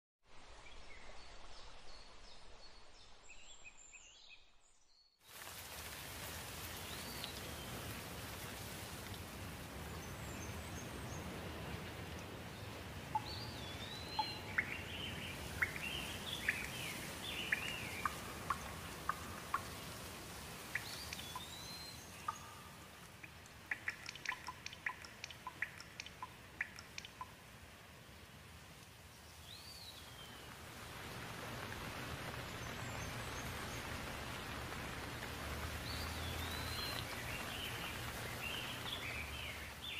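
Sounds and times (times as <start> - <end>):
background hiss: 5.3 - 39.9
bird chirps: 13.1 - 19.9, 20.7 - 27.3.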